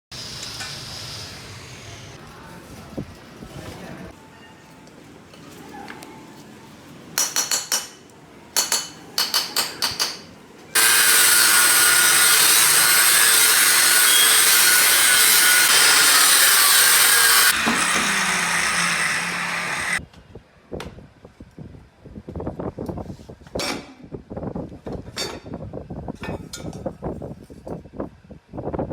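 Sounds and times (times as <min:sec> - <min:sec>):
power tool cutting through steel: 0:10.8 - 0:20.0.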